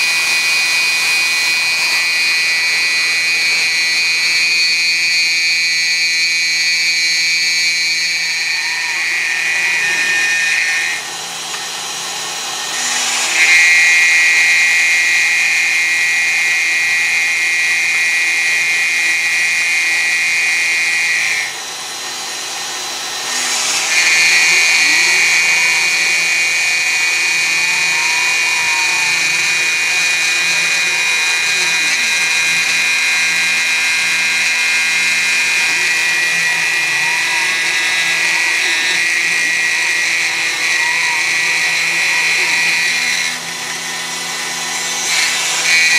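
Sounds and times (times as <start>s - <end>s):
milling machine high whine: 0.0s - 45.9s
motor tones rising and falling: 22.6s - 45.9s.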